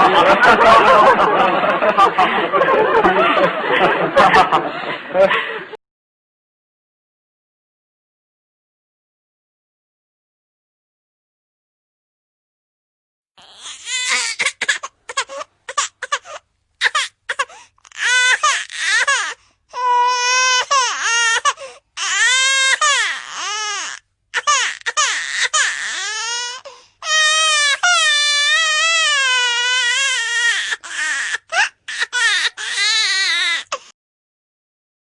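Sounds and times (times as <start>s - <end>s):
infant crying: 13.4s - 33.9s.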